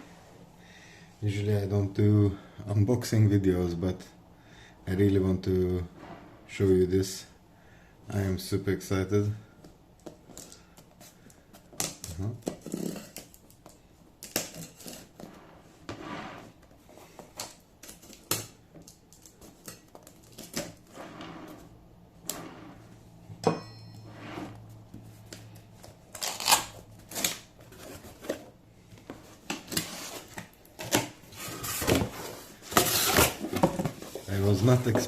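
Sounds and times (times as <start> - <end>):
packaging rustling: 25.9 - 28.5.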